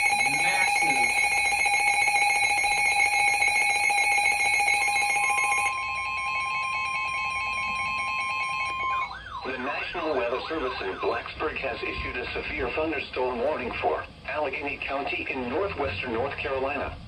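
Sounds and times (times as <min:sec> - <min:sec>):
electronic alert tones: 0:00.0 - 0:12.2.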